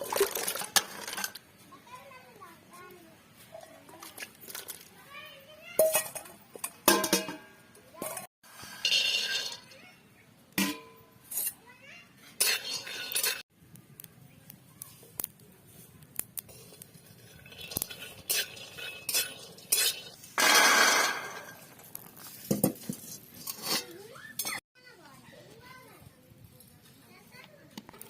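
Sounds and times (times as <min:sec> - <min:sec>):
pots and dishes clinking: 0:05.8 - 0:09.8, 0:10.6 - 0:11.5, 0:12.4 - 0:13.4, 0:16.5 - 0:21.9.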